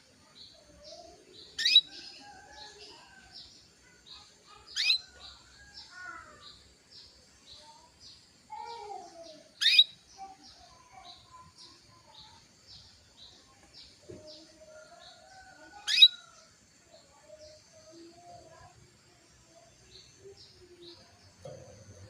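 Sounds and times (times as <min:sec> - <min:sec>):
canary high chirps: 0:00.4 - 0:06.7, 0:08.5 - 0:12.9, 0:14.2 - 0:18.1
sharp loud bird calls: 0:01.6 - 0:01.9, 0:09.6 - 0:10.0.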